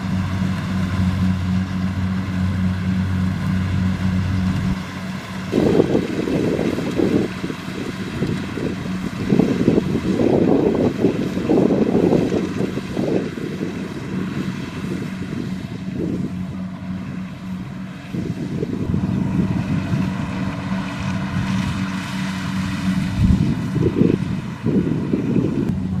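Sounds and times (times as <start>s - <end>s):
combine harvester engine drone: 0.0s - 26.0s.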